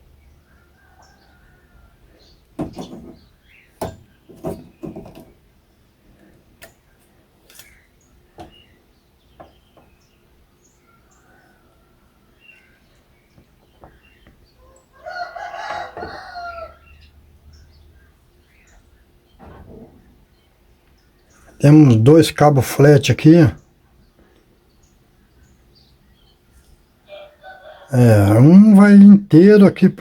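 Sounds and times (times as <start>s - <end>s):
rooster crowing: 0.4s - 2.2s, 10.8s - 12.6s, 14.6s - 17.2s, 27.1s - 28.3s
clicks and knocks on metal casing: 2.6s - 5.4s.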